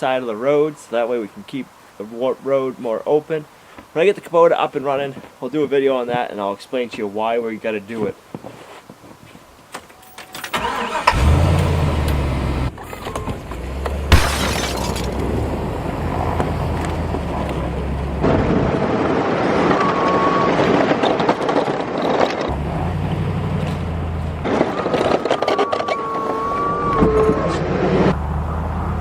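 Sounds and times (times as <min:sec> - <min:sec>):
truck engine humming: 0:10.6 - 0:18.4, 0:22.5 - 0:24.9, 0:27.4 - 0:29.0.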